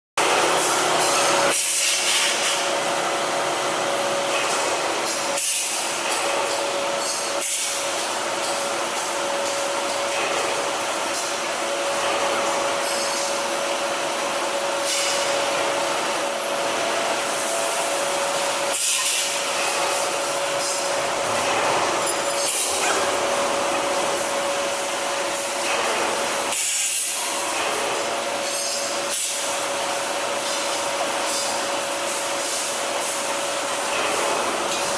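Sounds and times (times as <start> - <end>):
tire shredding machine grinding: 19.2 - 24.6.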